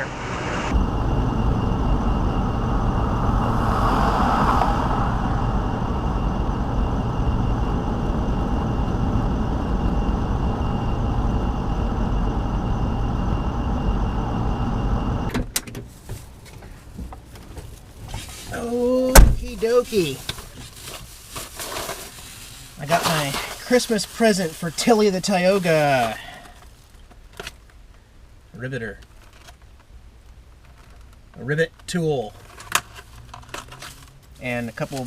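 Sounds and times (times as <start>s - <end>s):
wind rushing through window: 0.0s - 13.4s
engine and tyre rumble: 0.0s - 18.7s, 19.4s - 35.0s.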